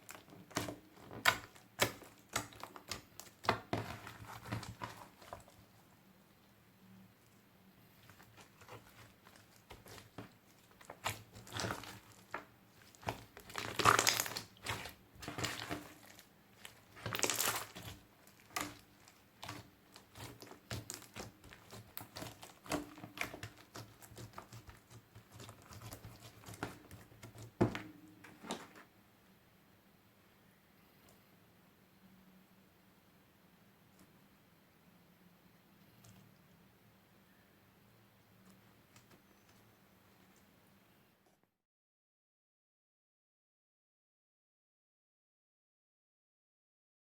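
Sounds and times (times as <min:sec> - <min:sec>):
slime squelching and crackling: 0:00.0 - 0:05.9, 0:08.0 - 0:28.8.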